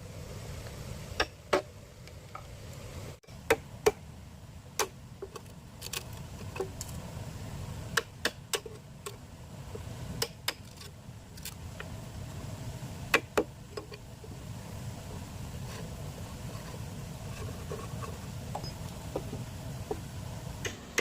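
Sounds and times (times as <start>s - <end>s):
low steady rumble: 0.0s - 21.0s
knocks and taps on bamboo: 7.9s - 9.2s, 10.2s - 10.8s, 13.1s - 14.0s.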